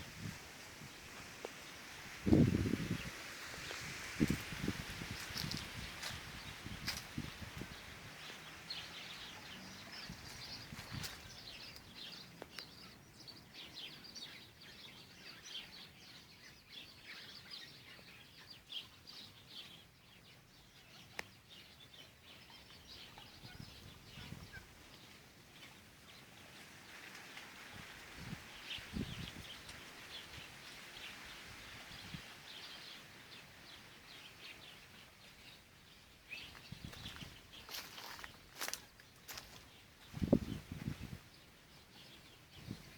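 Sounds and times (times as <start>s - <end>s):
birds chirping: 0.9s - 26.6s, 28.2s - 42.9s.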